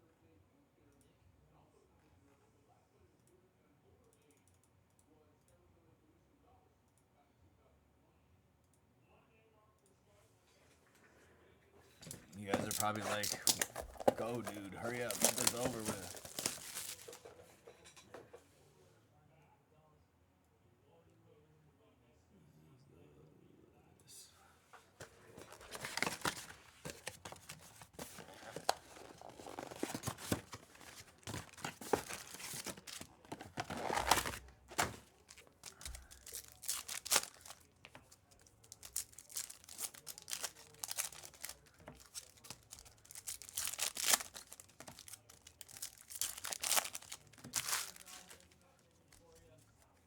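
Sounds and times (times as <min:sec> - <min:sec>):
card pack wrappers tearing and crinkling: 0:12.0 - 0:17.3, 0:25.0 - 0:48.6.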